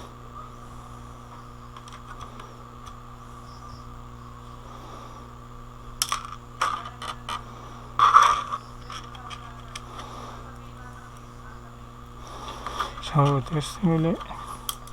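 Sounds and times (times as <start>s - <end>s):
electrical hum: 0.0s - 14.9s
small parts clicking and knocking: 1.7s - 3.0s, 6.0s - 7.4s, 8.0s - 10.1s, 12.6s - 14.9s
scraping clatter: 8.0s - 10.1s.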